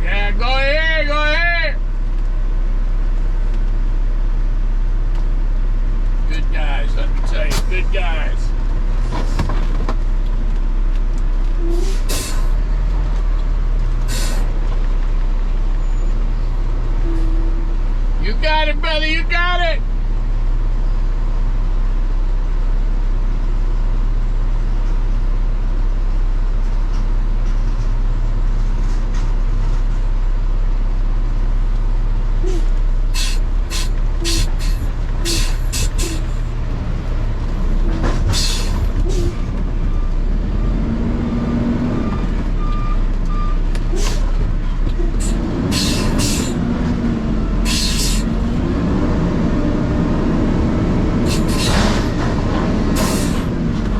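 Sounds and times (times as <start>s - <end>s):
truck diesel engine running: 0.0s - 53.9s
air-brake hisses: 11.6s - 12.6s, 14.0s - 14.6s, 32.4s - 36.4s, 38.3s - 39.4s, 43.9s - 44.3s, 45.1s - 46.6s, 47.6s - 48.3s, 51.2s - 52.2s, 53.0s - 53.5s.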